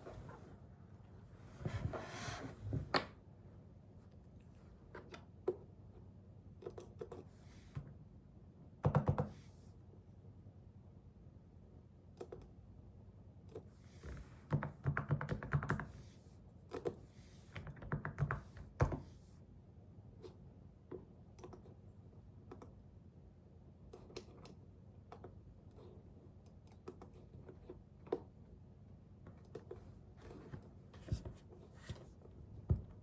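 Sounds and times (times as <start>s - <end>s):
typing on computer keyboard: 14.5s - 15.9s, 17.6s - 18.4s.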